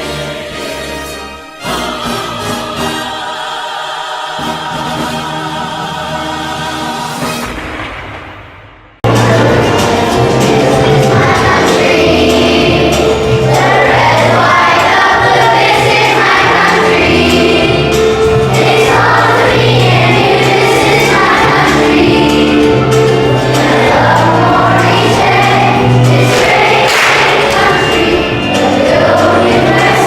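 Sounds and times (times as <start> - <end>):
children's choir singing: 0.0 - 7.5, 9.0 - 30.0
instrumental accompaniment: 9.0 - 30.0.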